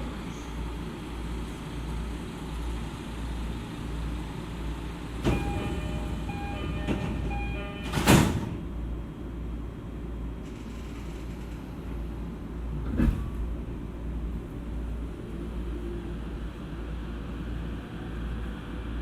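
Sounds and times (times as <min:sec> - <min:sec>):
train equipment humming: 0:04.0 - 0:10.4
sliding doors shutting with thud: 0:05.2 - 0:08.6
door chime tones: 0:05.3 - 0:08.6.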